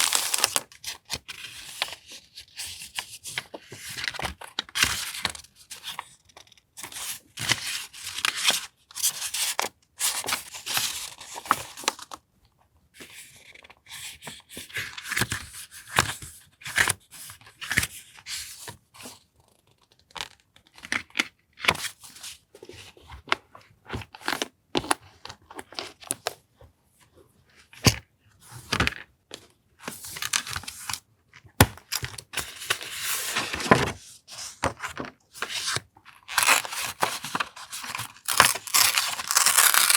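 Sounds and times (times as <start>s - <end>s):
paper rustling: 0.0s - 1.9s, 35.4s - 39.9s
paper and packaging crinkling: 0.0s - 2.0s, 35.5s - 39.9s.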